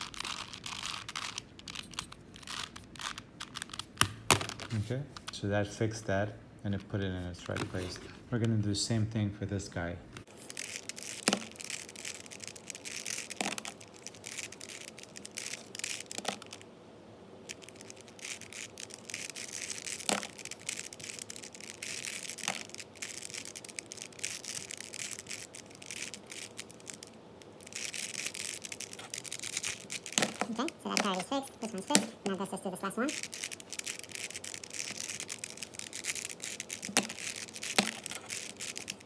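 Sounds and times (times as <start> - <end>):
puzzle cube plastic clicks: 0.0 - 5.4, 10.2 - 16.7, 17.5 - 39.0.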